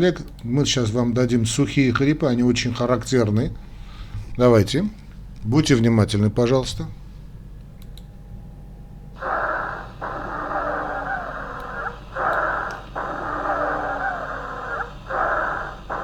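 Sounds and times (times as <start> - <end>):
wheezing lung sounds: 9.2 - 16.0.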